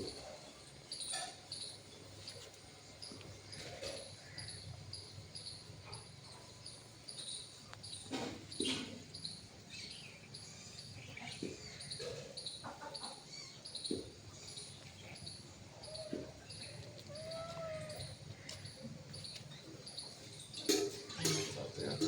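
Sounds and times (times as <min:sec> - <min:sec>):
squeaky animal calls: 0:15.8 - 0:18.2.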